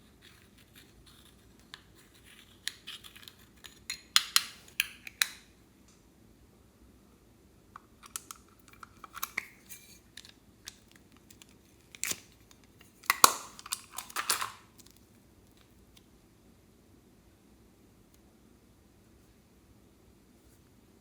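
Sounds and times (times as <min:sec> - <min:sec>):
small clicks and crackles: 0:08.0 - 0:16.1.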